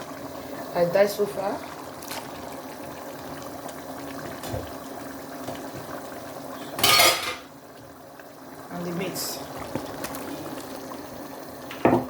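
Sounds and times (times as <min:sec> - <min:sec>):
stew bubbling: 0:00.0 - 0:11.8.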